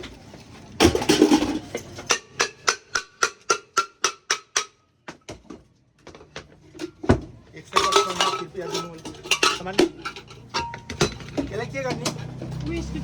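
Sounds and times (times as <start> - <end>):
metal clattering: 6.7 - 12.7.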